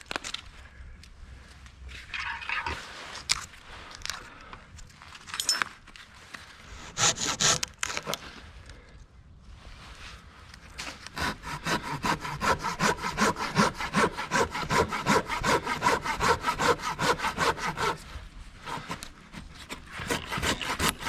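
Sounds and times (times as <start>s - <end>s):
hand saw cutting wood: 6.8s - 8.2s, 10.9s - 21.0s.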